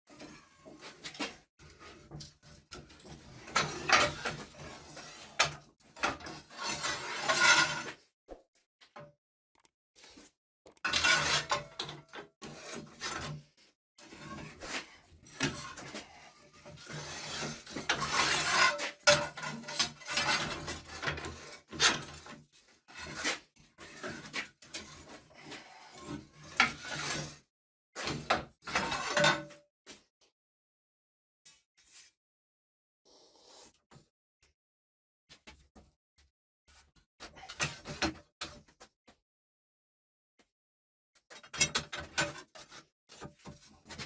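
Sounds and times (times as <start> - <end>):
steel parts clanking and scraping: 2.2 - 7.9, 10.9 - 12.2, 15.4 - 22.2, 28.7 - 29.5.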